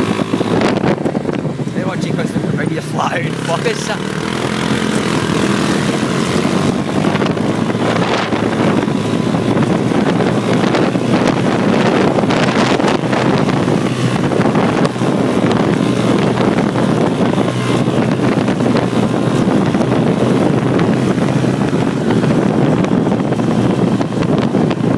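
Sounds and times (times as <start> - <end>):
buggy engine running: 0.0 - 24.9
wind noise on microphone: 0.0 - 24.9.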